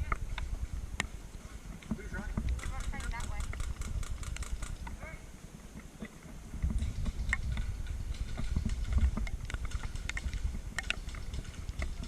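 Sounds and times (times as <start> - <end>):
wind on microphone: 0.0 - 12.0
sharp clicks and knocks: 5.8 - 12.0
gear movement: 6.2 - 12.0.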